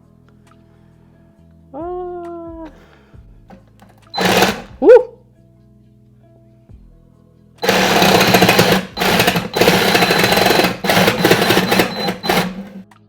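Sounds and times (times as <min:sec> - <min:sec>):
reciprocating saw cutting wood: 0:04.2 - 0:04.8, 0:07.6 - 0:12.9.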